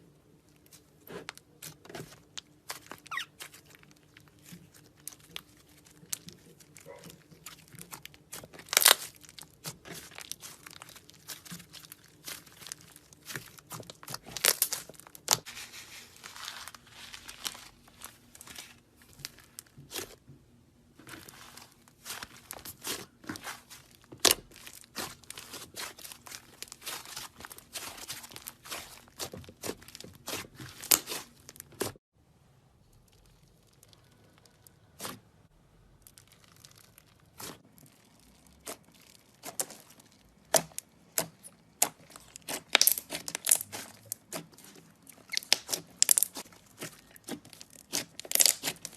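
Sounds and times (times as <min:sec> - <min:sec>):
slime squeezed with crackling pops: 0:02.6 - 0:04.5, 0:05.1 - 0:15.5, 0:36.1 - 0:48.9.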